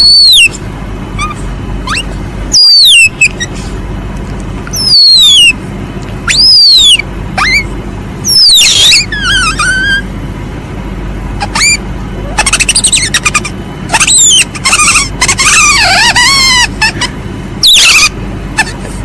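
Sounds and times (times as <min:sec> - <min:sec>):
high animal squeals: 0:00.0 - 0:00.6, 0:01.2 - 0:03.6, 0:04.7 - 0:05.6, 0:06.2 - 0:10.1, 0:11.4 - 0:18.8
low hum: 0:00.0 - 0:19.0
warbling trill: 0:01.1 - 0:03.6, 0:06.2 - 0:10.1, 0:11.4 - 0:18.2
rising chirps: 0:01.2 - 0:03.6, 0:04.7 - 0:05.6, 0:06.2 - 0:10.1.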